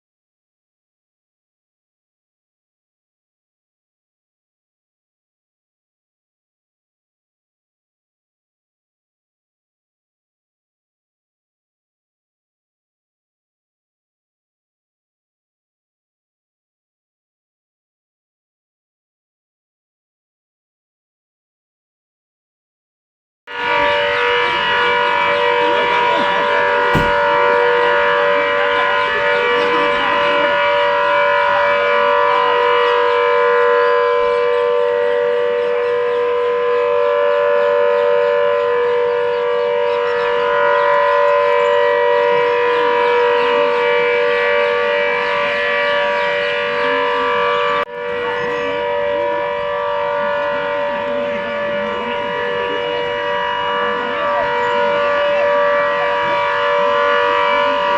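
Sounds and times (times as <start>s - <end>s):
air-raid siren: 23.5s - 57.9s.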